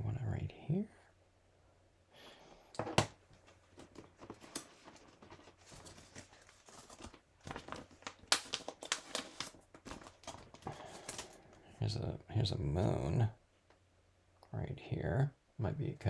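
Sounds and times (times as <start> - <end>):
paper rustling: 3.4 - 11.6.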